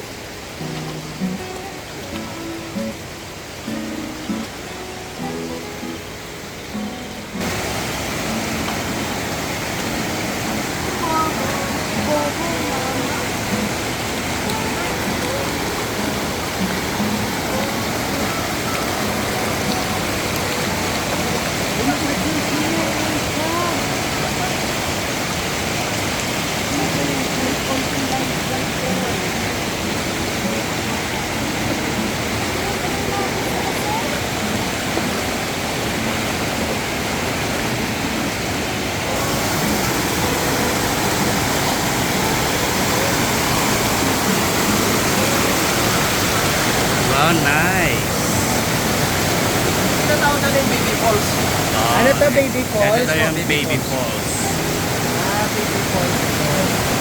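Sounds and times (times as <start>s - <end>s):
river and waterfalls rushing: 0.0s - 57.0s.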